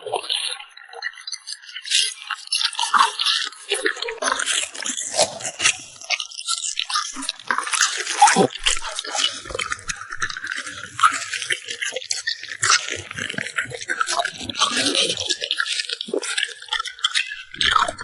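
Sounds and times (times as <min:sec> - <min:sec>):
dog chewing watermelon: 0:03.8 - 0:18.0.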